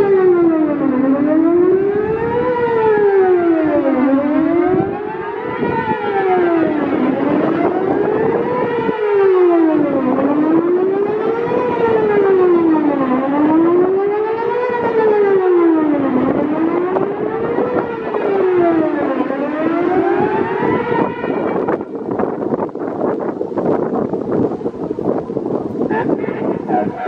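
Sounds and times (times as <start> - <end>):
electronic siren rising and falling: 0.0 - 22.8.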